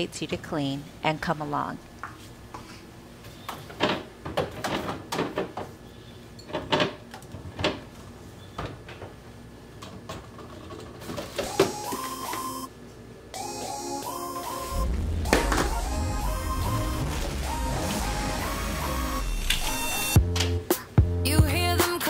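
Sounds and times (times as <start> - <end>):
knocks and clunks of household items: 3.7 - 5.8, 6.5 - 7.9
short pitched tone: 14.4 - 20.2.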